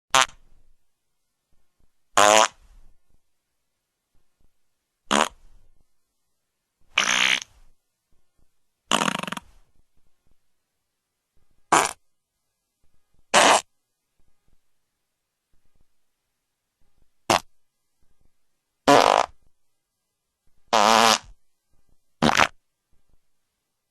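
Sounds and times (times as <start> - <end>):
fart sound effects: 0.1 - 0.4, 2.2 - 2.7, 5.1 - 5.4, 7.0 - 7.6, 8.9 - 9.6, 11.7 - 12.0, 13.3 - 13.7, 17.3 - 17.5, 18.8 - 19.4, 20.7 - 21.4, 22.2 - 22.6.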